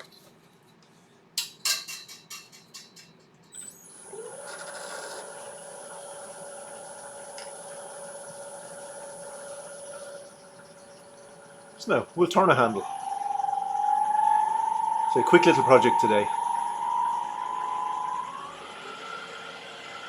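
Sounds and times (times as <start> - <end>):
wood lathe running: 3.7 - 20.0.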